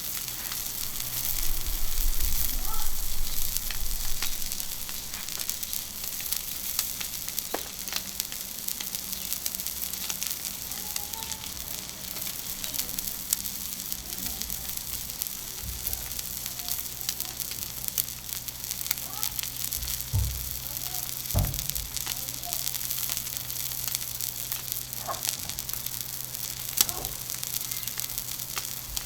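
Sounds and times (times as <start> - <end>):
steak sizzling on griddle: 0.0 - 29.0.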